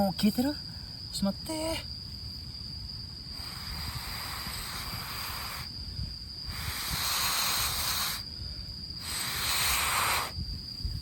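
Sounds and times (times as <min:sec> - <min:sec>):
hissing blows through pipe: 0:03.3 - 0:08.4, 0:09.0 - 0:10.6.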